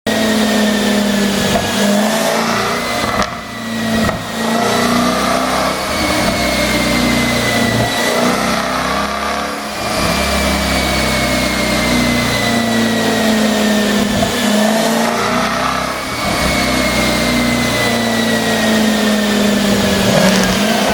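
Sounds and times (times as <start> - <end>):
car engine under throttle: 0.0 - 20.9
exhaust pops: 3.0 - 4.5, 19.8 - 20.9.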